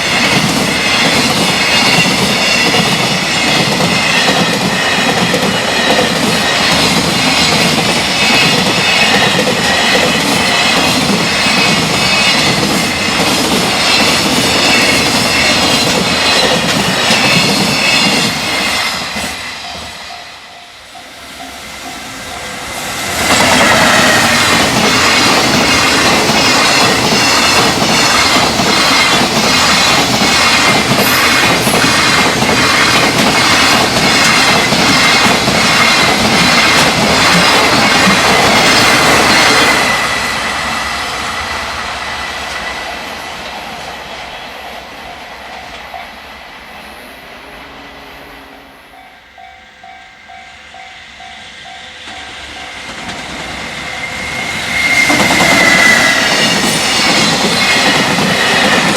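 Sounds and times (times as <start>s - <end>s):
train wheels clacking over rail joints: 0.0s - 19.4s, 23.1s - 40.1s, 52.0s - 58.9s
freight train passing at high speed: 0.0s - 58.9s.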